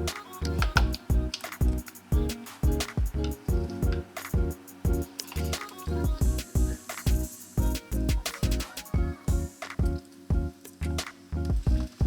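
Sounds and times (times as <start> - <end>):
music with heavy bass thump: 0.6 - 5.1, 6.1 - 10.5, 11.5 - 12.0.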